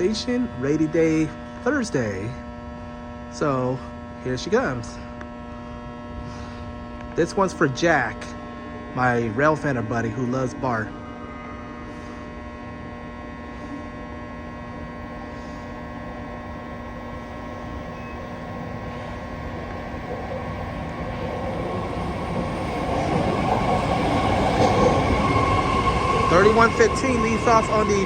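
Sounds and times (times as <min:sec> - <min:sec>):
steady electrical hum: 0:00.0 - 0:21.2
train approaching platform: 0:03.4 - 0:28.0.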